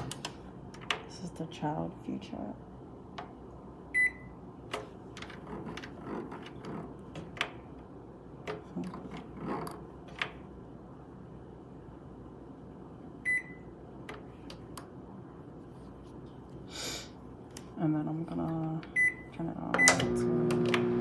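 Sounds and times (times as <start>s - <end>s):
microwave buttons clicking: 18.8s - 20.9s.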